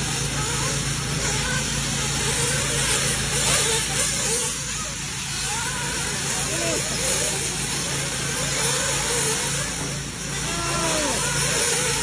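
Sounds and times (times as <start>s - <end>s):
model car motors whining: 0.0s - 12.0s.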